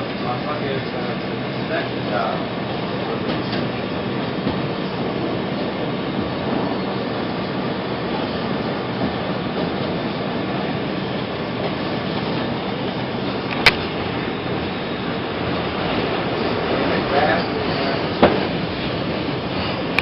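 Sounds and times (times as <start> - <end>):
subway train rumbling on rails: 0.0 - 20.0.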